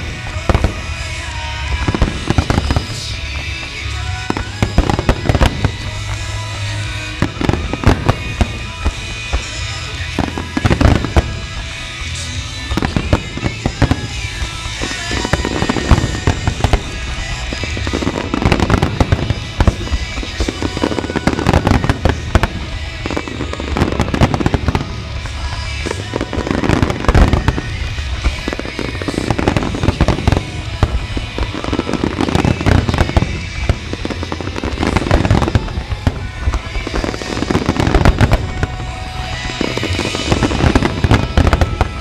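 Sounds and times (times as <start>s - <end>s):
fireworks bursting and crackling: 0.0s - 42.0s
music playing: 0.0s - 42.0s.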